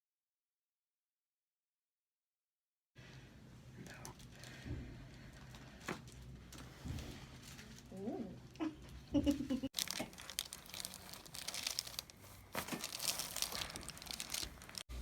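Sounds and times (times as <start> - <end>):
crinkling and rustling: 3.7 - 15.0.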